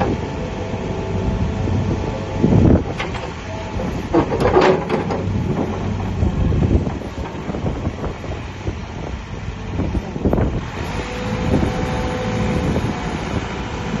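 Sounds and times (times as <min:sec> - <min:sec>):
diesel engine rumbling: 0:00.0 - 0:14.0
steady whine: 0:00.0 - 0:14.0
knocks and clanks: 0:02.8 - 0:08.2.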